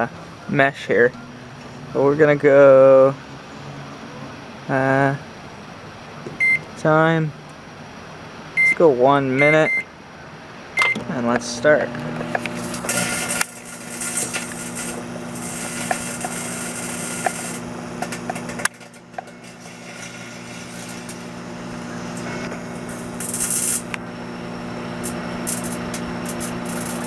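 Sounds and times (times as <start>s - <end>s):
microwave oven humming: 6.4s - 6.7s, 8.6s - 8.8s, 9.4s - 9.9s, 10.8s - 27.0s
electrical arcing sizzle: 11.0s - 27.0s.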